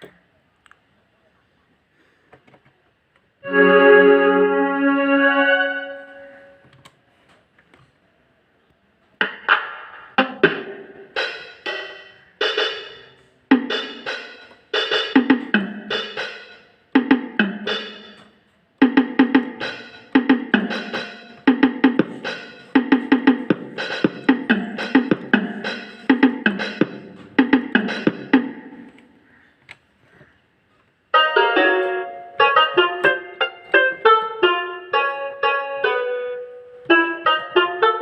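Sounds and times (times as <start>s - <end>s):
electronic keyboard percussive notes: 3.4s - 6.6s, 9.2s - 29.0s, 31.2s - 38.0s.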